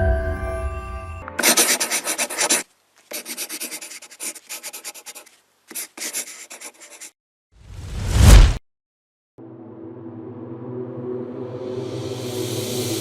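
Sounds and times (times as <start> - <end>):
music: 0.0 - 1.5, 9.4 - 13.0
rapid scratching strokes: 1.4 - 7.2.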